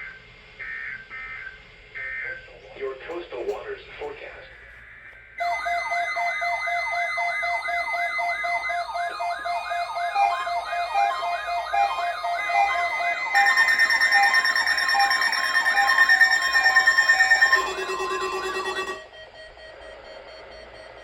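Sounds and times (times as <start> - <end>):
steady electronic tones: 5.4 - 19.3
electronic siren wail: 5.4 - 20.1.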